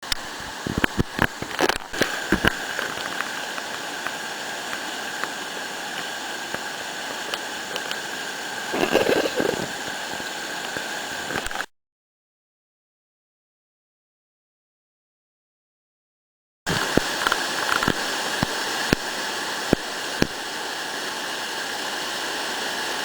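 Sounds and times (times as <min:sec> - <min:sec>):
river water flowing: 0:00.0 - 0:11.6, 0:16.7 - 0:23.0
water splashing: 0:00.1 - 0:11.5.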